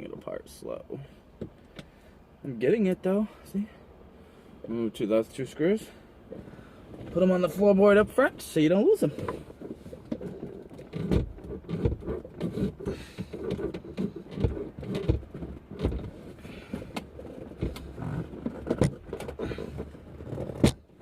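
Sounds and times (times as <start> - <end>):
plastic trim knocking and rattling: 10.1 - 16.2.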